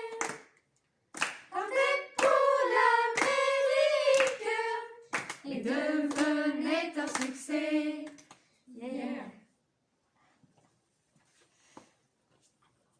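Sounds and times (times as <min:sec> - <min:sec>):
children's choir singing: 0:00.0 - 0:00.4, 0:01.5 - 0:08.2.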